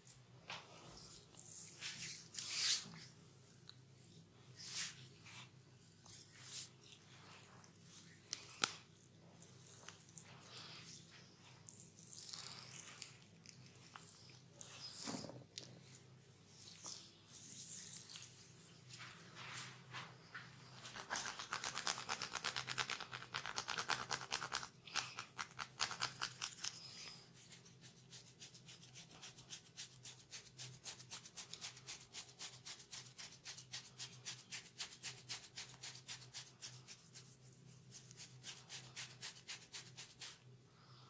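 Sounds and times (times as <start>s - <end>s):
hands rubbing skin: 16.7s - 40.4s.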